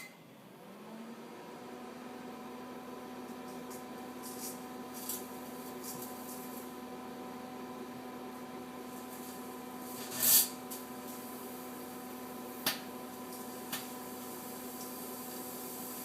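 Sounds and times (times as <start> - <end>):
microwave oven humming: 0.0 - 16.0
crackling sparks arcing: 8.8 - 11.6, 12.5 - 16.0.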